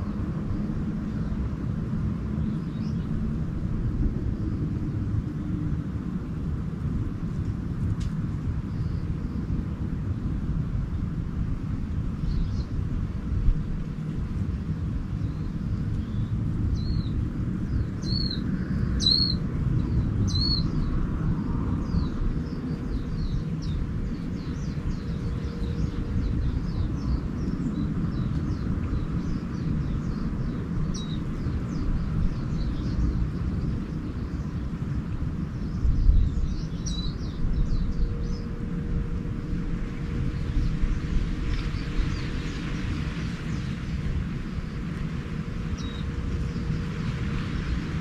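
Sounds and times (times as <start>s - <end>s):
steady low rumble: 0.0s - 48.0s
small birds chirping: 2.3s - 3.2s, 14.4s - 21.0s, 21.8s - 39.1s.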